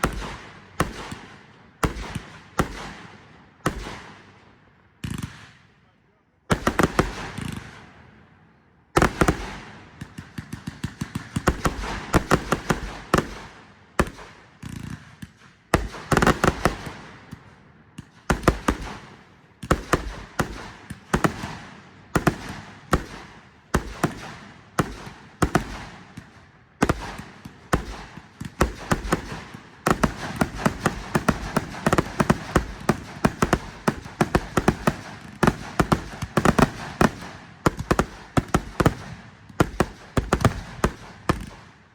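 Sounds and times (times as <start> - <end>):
fireworks bangs: 0.0 - 2.9, 18.0 - 41.6
fireworks crackling: 26.8 - 41.6.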